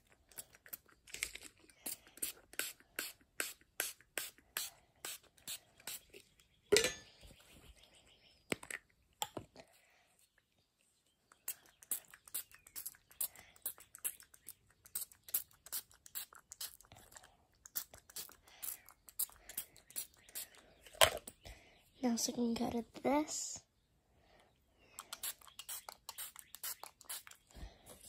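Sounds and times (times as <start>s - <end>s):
small hard objects clicking: 0.0s - 4.1s, 11.3s - 21.4s, 25.0s - 27.5s.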